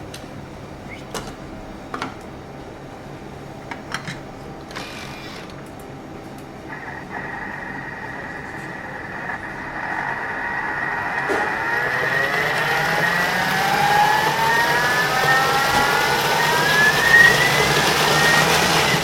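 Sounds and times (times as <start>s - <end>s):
blender motor whining: 4.7s - 5.6s, 6.7s - 19.0s.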